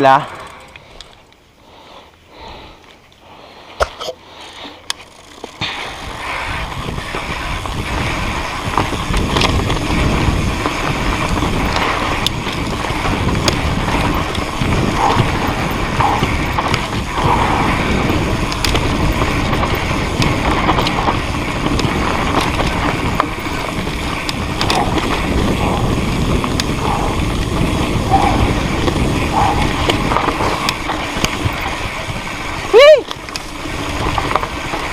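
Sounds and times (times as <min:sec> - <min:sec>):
bike tyre rumble: 0:00.0 - 0:34.9
freehub buzzing: 0:04.8 - 0:34.9
wind on microphone: 0:05.6 - 0:34.9.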